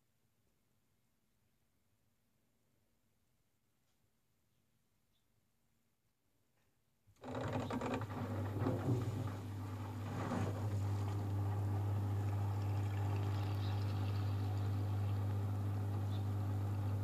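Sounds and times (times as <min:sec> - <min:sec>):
washing machine humming: 0:07.2 - 0:17.0.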